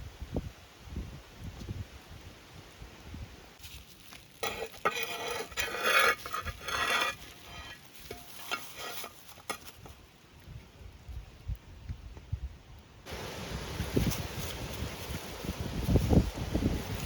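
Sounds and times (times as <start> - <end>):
utensil stirring in a pot: 3.7 - 9.8.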